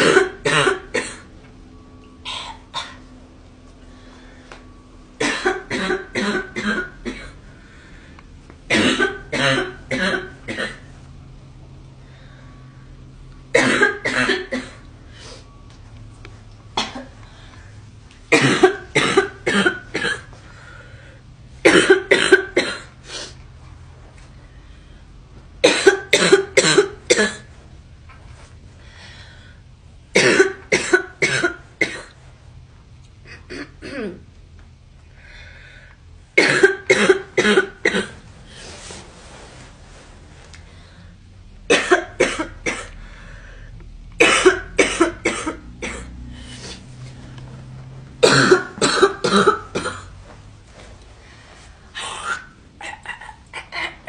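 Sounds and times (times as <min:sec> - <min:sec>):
girl coughing: 0:00.0 - 0:01.3, 0:02.3 - 0:03.0, 0:05.2 - 0:07.4, 0:08.7 - 0:10.9, 0:13.5 - 0:14.8, 0:16.8 - 0:17.2, 0:18.3 - 0:20.3, 0:21.6 - 0:22.9, 0:25.6 - 0:27.5, 0:30.2 - 0:32.2, 0:33.3 - 0:34.2, 0:36.4 - 0:38.2, 0:41.7 - 0:43.0, 0:44.2 - 0:46.2, 0:48.2 - 0:50.2.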